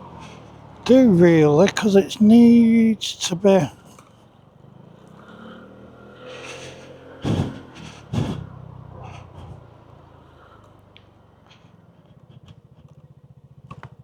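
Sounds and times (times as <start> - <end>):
scooter engine running: 3.9 - 14.0.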